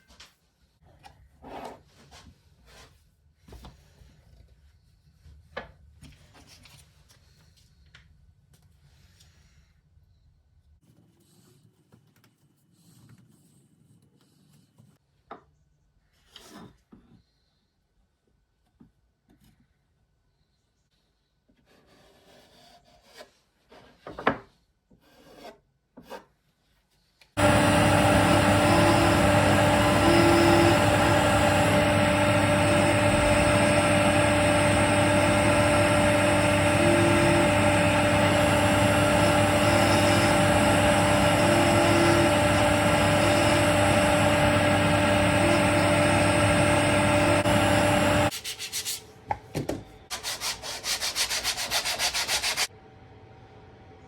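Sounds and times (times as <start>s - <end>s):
electric power tool humming: 27.4s - 48.3s
rubbing strokes on wood: 50.1s - 52.7s.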